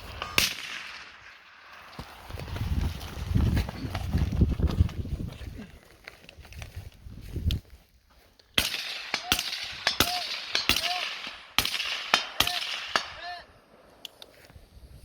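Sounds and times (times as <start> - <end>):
gunshots: 0.0 - 1.5, 8.6 - 13.4.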